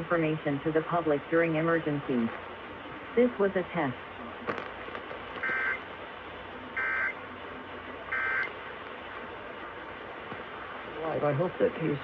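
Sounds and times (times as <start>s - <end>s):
radio hiss: 0.0s - 12.0s
shrill warbling data tones: 6.8s - 7.2s, 8.1s - 8.5s.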